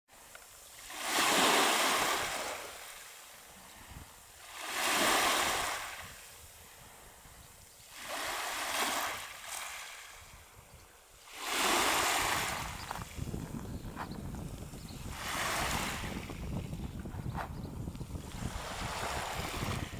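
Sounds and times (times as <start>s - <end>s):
waves washing over pebbles: 0.7s - 3.4s, 4.3s - 6.4s, 7.9s - 10.3s, 11.3s - 13.6s, 15.1s - 16.6s, 18.2s - 19.9s
wind rumble on microphone: 3.7s - 4.2s, 10.1s - 11.0s, 11.6s - 19.9s.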